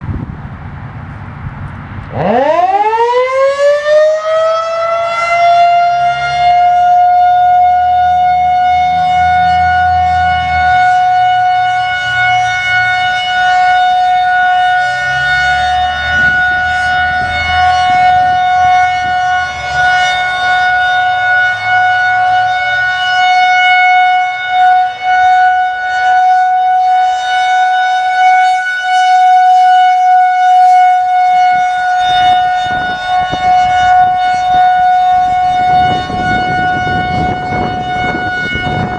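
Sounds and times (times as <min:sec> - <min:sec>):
warning siren steady tone: 0:02.0 - 0:38.9.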